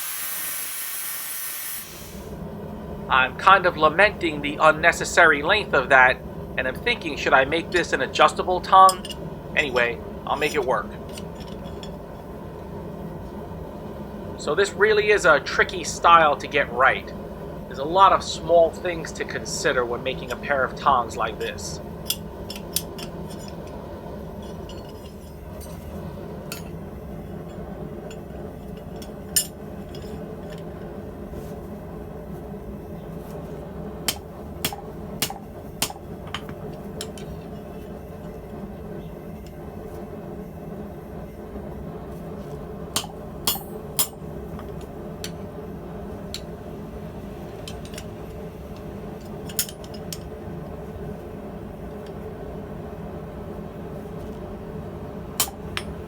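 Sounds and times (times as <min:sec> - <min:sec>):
steady low hum: 0:00.0 - 0:56.0
metal tongs clinking: 0:08.7 - 0:12.0, 0:20.1 - 0:23.8, 0:24.4 - 0:26.8, 0:27.5 - 0:30.7, 0:34.1 - 0:37.6, 0:47.6 - 0:48.2, 0:49.2 - 0:50.3.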